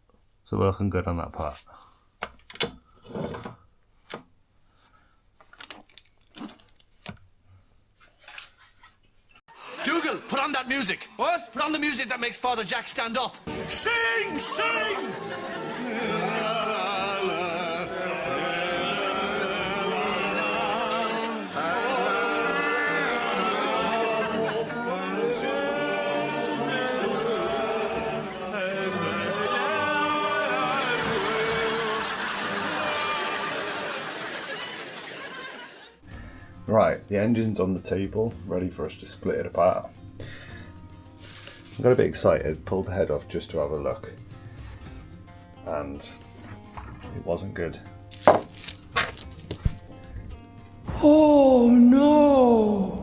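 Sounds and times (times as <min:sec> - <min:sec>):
voices singing chant-like notes: 0:13.5 - 0:34.1.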